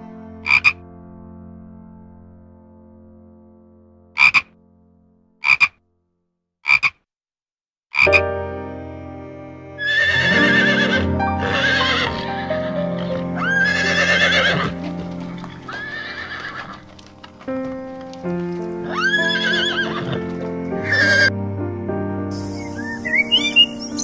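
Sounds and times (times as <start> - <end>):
background music: 0.0 - 5.3, 8.0 - 24.0
horse whinnying: 9.8 - 12.4, 13.0 - 16.9, 18.8 - 21.3.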